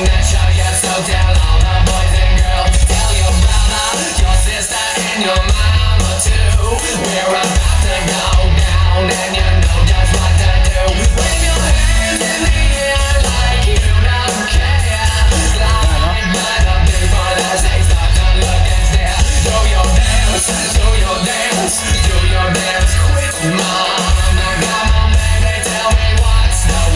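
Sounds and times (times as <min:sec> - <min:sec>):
pulsing bass beat: 0:00.0 - 0:04.6, 0:05.4 - 0:07.0, 0:07.6 - 0:23.5, 0:24.1 - 0:26.9
rock song over loudspeakers: 0:00.0 - 0:26.9.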